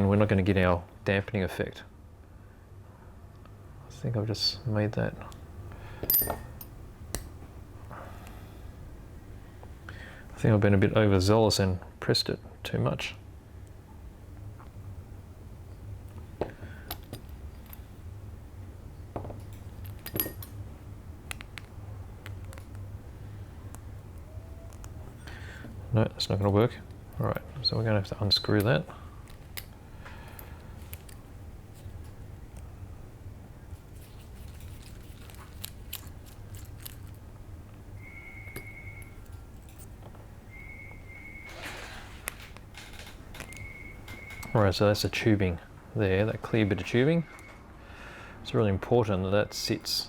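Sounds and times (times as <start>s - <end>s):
steady low hum: 0.0s - 50.0s
small parts clicking and clinking: 6.0s - 7.3s, 15.7s - 18.0s, 19.2s - 20.6s, 28.3s - 32.7s, 33.8s - 37.4s, 38.5s - 40.1s
small plastic and metal parts clicking: 34.0s - 37.2s.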